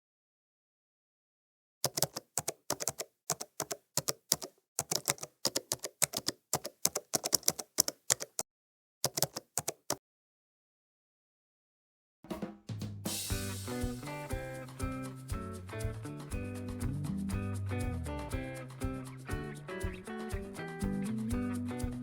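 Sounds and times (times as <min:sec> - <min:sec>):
keyboard typing clicks: 0:01.8 - 0:08.4, 0:09.0 - 0:10.0.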